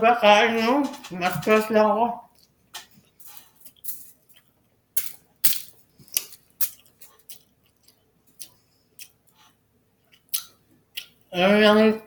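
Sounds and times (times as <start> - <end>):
wet chewing and mouth smacks: 2.3 - 11.3.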